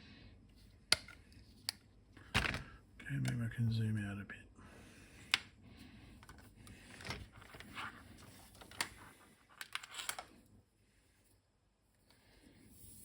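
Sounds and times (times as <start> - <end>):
cable rustling: 6.1 - 10.4.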